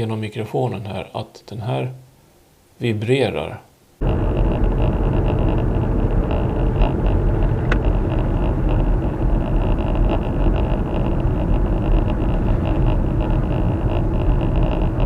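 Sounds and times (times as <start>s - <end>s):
car driving noise: 4.0s - 15.0s.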